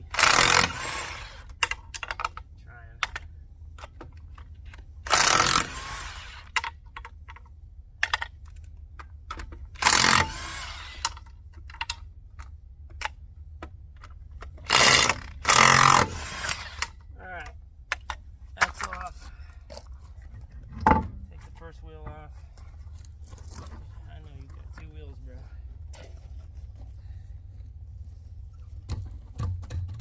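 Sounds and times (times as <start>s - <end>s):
impact wrench bursts: 0.0s - 2.1s, 5.0s - 6.8s, 9.8s - 11.2s, 14.6s - 17.0s.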